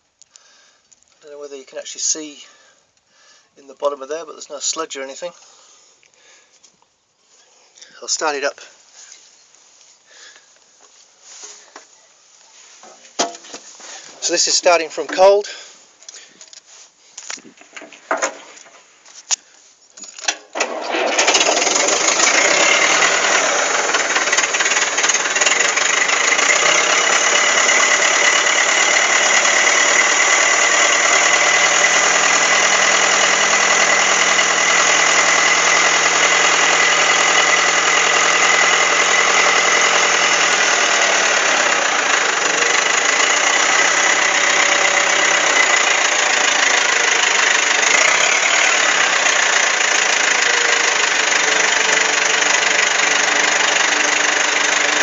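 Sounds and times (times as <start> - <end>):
bulldozer diesel engine starting: 20.3 - 55.0.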